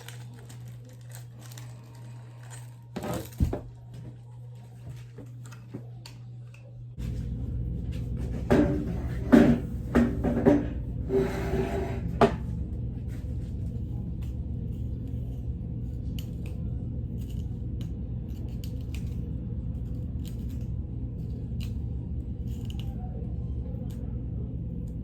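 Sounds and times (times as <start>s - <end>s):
steady low hum: 0.0s - 25.0s
knocks and rustles: 7.9s - 10.9s
faint clicks and snips: 16.0s - 23.1s.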